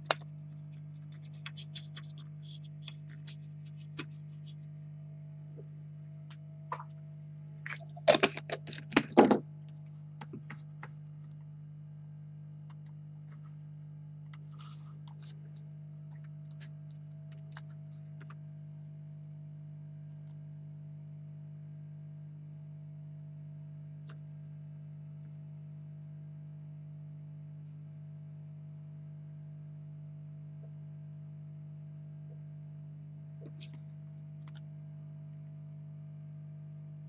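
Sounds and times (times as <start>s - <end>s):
steady low hum: 0.0s - 26.4s.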